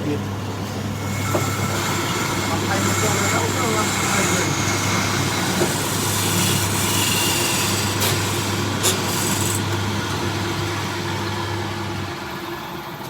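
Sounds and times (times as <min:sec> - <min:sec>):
power tool motor humming: 0:01.0 - 0:10.1.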